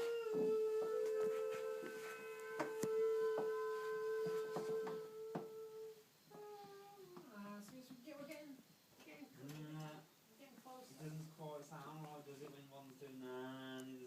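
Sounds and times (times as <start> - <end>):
person humming a steady note: 0.0 - 7.3.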